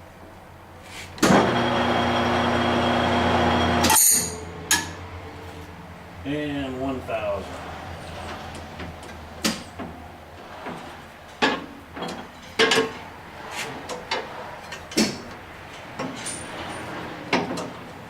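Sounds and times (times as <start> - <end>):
lathe low hum: 1.2 - 3.9.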